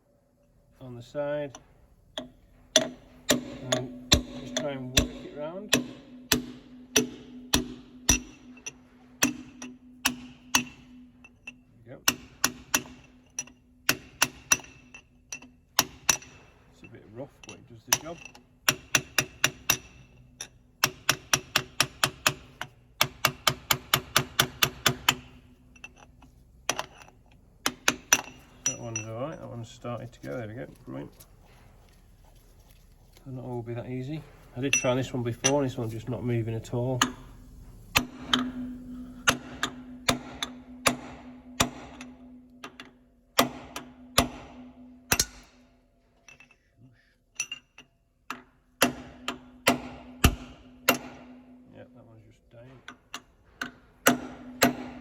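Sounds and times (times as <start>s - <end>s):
faint steady hum: 0.0s - 55.0s
hammer striking chisel on metal: 1.5s - 16.6s, 17.4s - 29.4s, 37.0s - 37.3s, 37.9s - 46.6s, 47.4s - 51.7s, 52.7s - 55.0s.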